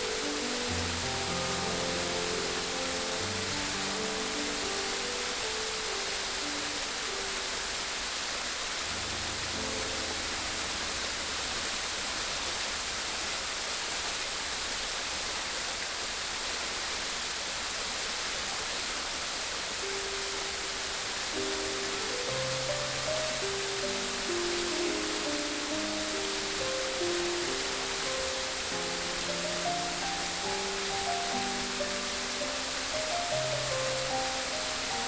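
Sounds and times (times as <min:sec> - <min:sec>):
flowing water rushing: 0:00.0 - 0:35.0.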